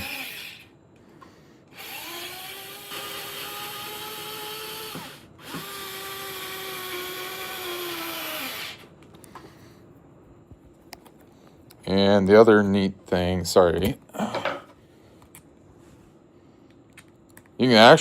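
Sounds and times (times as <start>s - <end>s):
cordless screwdriver motor whining: 0.0s - 0.7s, 1.7s - 8.8s.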